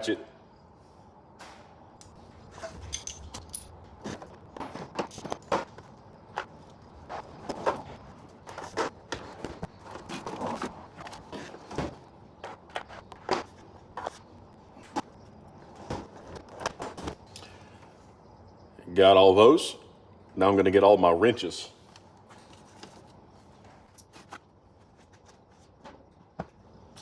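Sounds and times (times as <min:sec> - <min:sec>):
steel tools clinking and clattering: 0:02.6 - 0:03.8.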